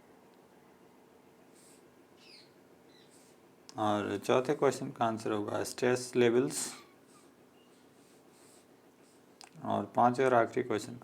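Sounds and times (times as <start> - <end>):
faint high chirps: 2.2 - 3.2.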